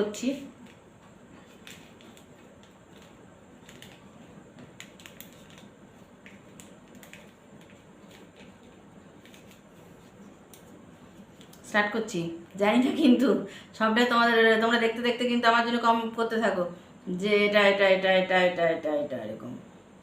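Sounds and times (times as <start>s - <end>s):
paper rustling: 1.4s - 11.6s.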